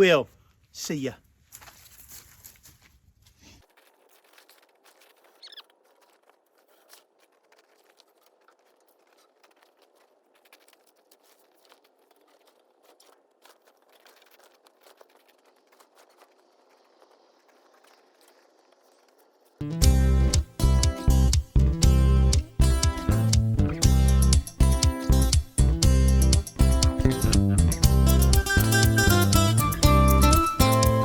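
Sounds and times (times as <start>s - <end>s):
small clicks and rustles: 1.4s - 19.6s
high chirp: 27.8s - 31.0s.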